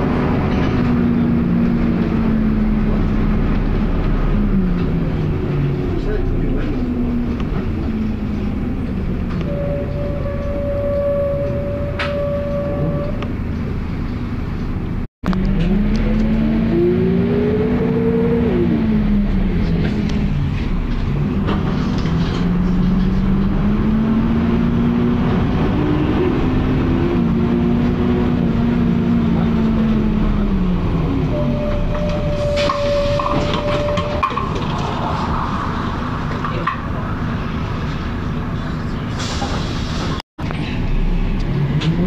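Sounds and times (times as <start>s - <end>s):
bus engine and transmission whining: 0.0s - 42.0s.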